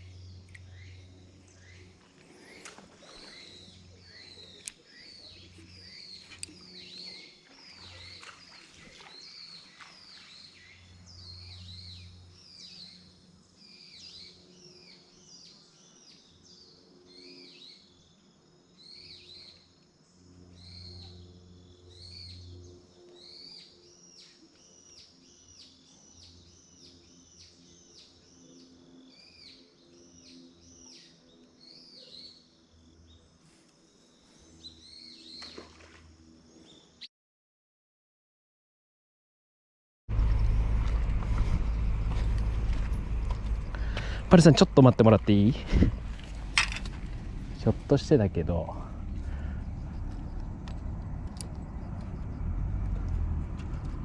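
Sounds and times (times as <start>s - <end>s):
birds chirping: 0.0s - 37.1s, 41.2s - 54.0s
faint low hum: 40.1s - 54.0s.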